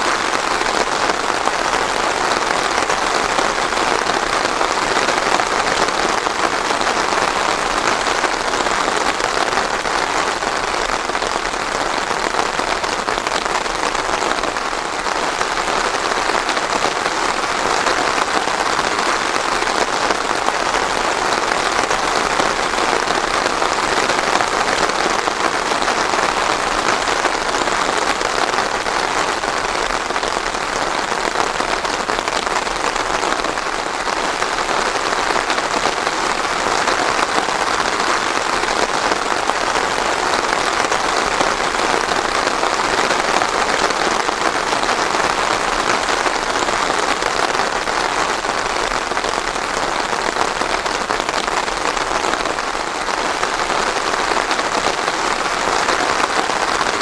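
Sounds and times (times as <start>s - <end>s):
heavy rain falling: 0.0s - 57.0s.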